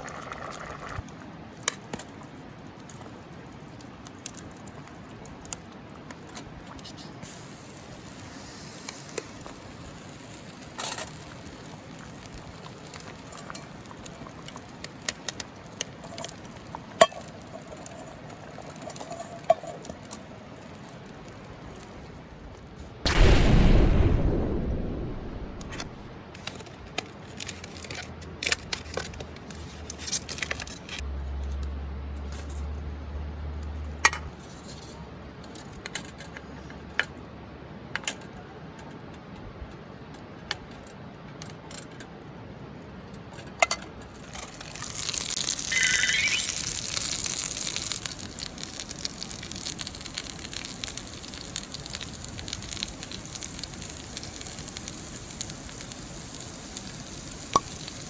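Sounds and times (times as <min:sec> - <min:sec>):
food sizzling in a pan: 0:07.2 - 0:12.1, 0:44.5 - 0:58.0.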